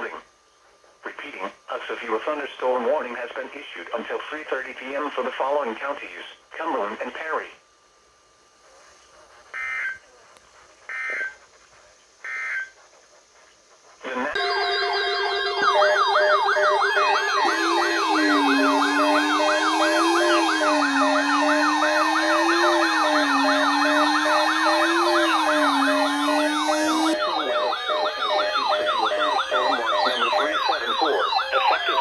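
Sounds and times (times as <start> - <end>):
high warbling siren tones: 14.4 - 32.0
siren yelp sweeping up and down: 14.4 - 32.0
slow rising and falling siren wail: 14.4 - 32.0.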